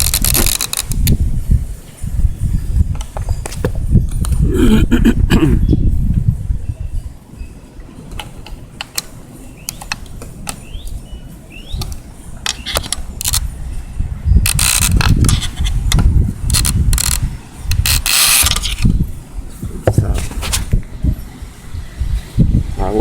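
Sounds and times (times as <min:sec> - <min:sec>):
plastic scraping and rattling: 0:00.0 - 0:01.2, 0:14.5 - 0:19.0.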